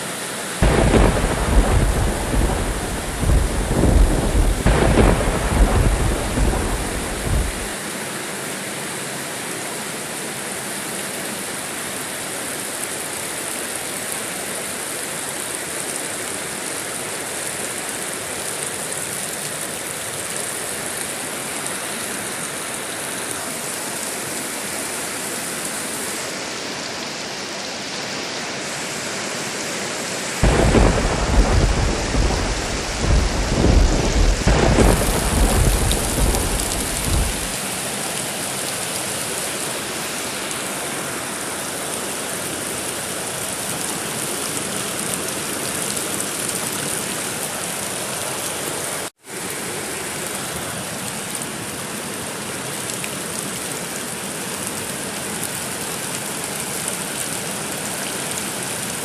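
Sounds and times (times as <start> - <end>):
steady rain: 0.0 - 59.0
rolling thunder: 0.6 - 7.8, 30.4 - 37.6.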